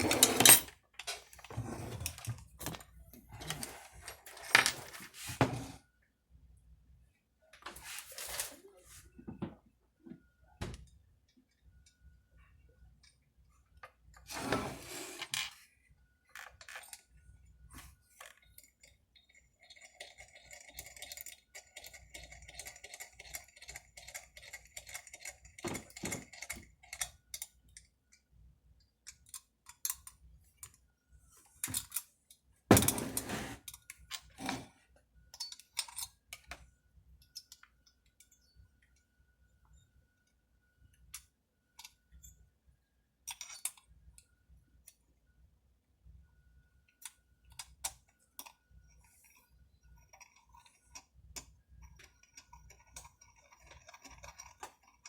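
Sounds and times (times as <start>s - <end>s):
metal parts and tools clinking: 0.0s - 5.1s, 35.3s - 36.5s, 51.8s - 55.0s.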